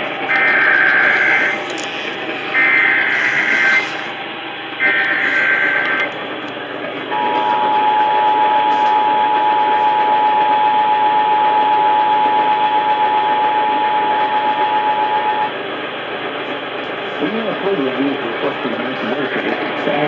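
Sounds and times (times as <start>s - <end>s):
radio broadcast hiss: 0.1s - 4.2s.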